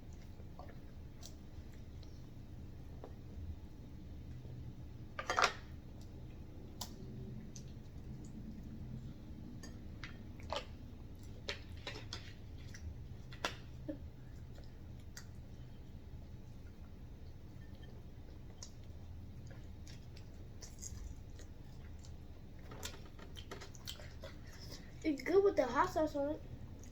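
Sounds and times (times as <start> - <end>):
low steady hum: 0.0 - 26.9
chewing: 6.7 - 15.8, 16.4 - 25.3, 26.6 - 26.9.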